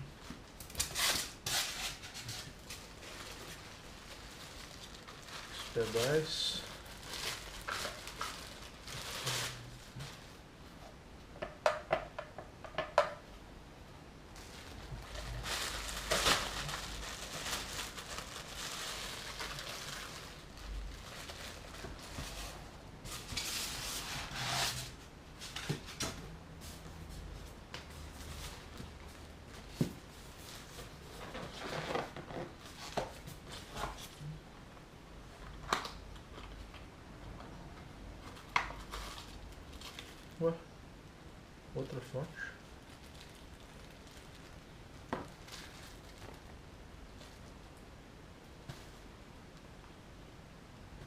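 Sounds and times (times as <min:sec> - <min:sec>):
packaging rustling: 0:00.3 - 0:10.4, 0:14.4 - 0:24.8, 0:38.3 - 0:40.5, 0:42.6 - 0:46.5.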